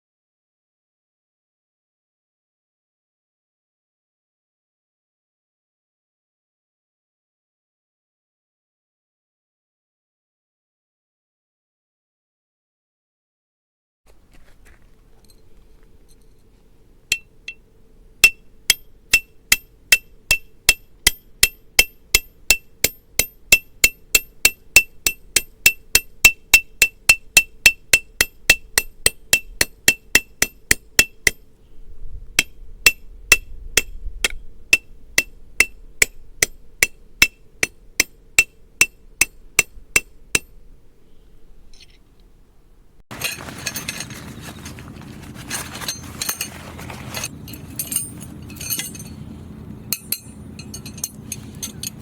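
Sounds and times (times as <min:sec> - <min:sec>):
hammer striking metal tent peg: 0:17.1 - 0:17.6, 0:18.2 - 0:31.5, 0:32.4 - 0:40.6, 0:49.9 - 0:52.0
rough scraping: 0:43.1 - 0:52.0.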